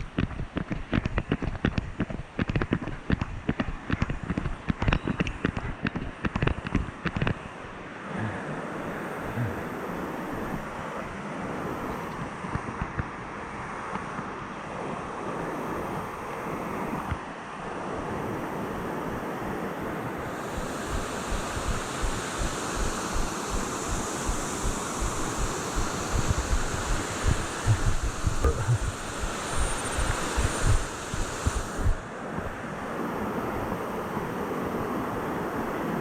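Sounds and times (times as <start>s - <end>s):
water rushing in stream: 0.0s - 36.0s
low thumps on microphone: 20.6s - 32.5s.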